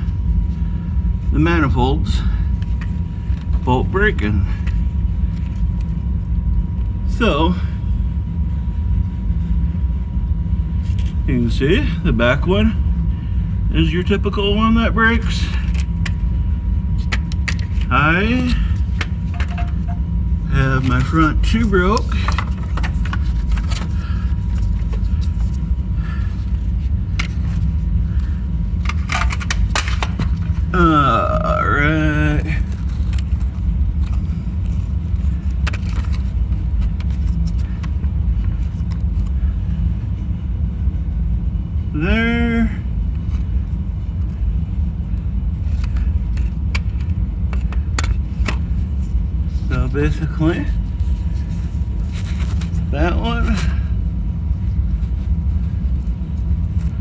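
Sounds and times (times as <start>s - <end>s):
steady low hum: 0.0s - 57.0s
steady low rumble: 0.0s - 57.0s
hard objects clicking and scraping: 19.0s - 20.0s.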